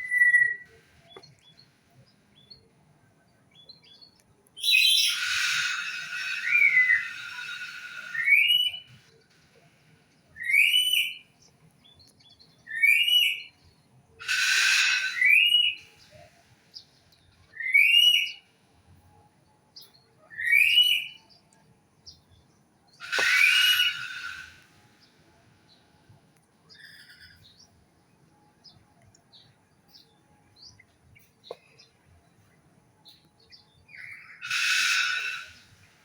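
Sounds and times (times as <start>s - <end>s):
harsh raspy bird call: 4.6s - 8.8s, 14.2s - 15.8s, 23.0s - 24.7s, 34.0s - 36.0s
bird rising whistled note: 4.6s - 8.9s, 14.2s - 15.8s, 23.0s - 24.7s, 34.0s - 35.8s.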